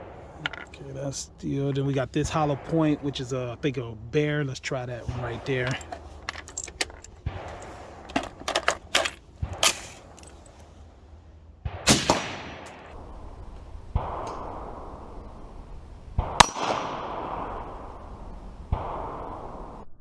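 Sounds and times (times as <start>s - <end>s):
steel plate clanging: 5.0s - 10.6s
rifle handling clicks: 5.2s - 10.6s
rifle shots: 7.1s - 10.4s, 11.6s - 13.0s, 16.2s - 17.7s.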